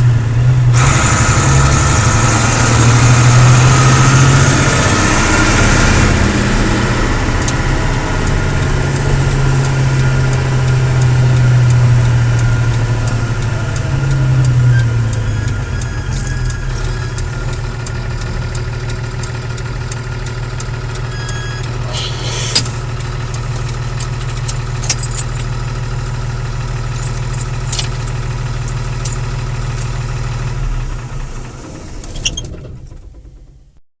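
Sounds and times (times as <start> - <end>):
diesel lorry engine idling: 0.0 - 33.6
short hiss: 21.8 - 22.8.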